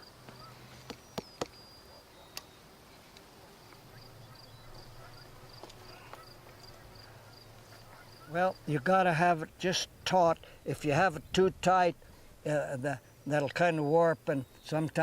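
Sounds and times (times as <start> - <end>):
insect chirping: 3.6 - 8.7.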